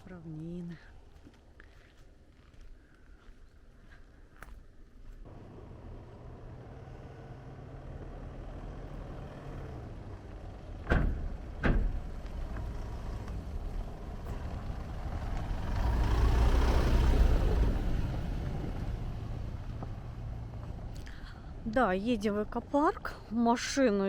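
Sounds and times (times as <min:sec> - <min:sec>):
car engine humming: 0:05.2 - 0:23.3
sharp knocks: 0:10.8 - 0:12.1.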